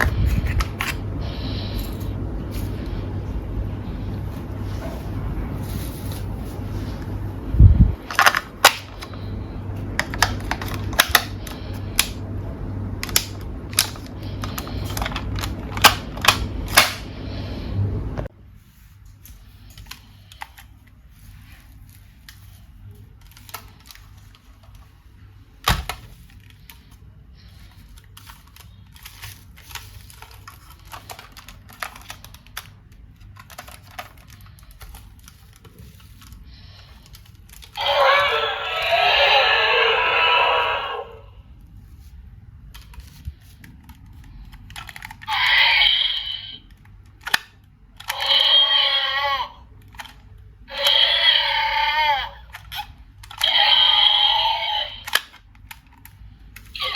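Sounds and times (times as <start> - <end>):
steady low hum: 0.0 - 45.4.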